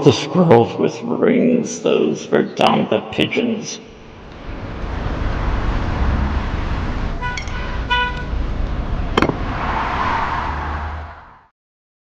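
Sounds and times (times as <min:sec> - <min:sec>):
distant traffic rumble: 0:00.0 - 0:11.5
short horn toots: 0:07.2 - 0:08.3.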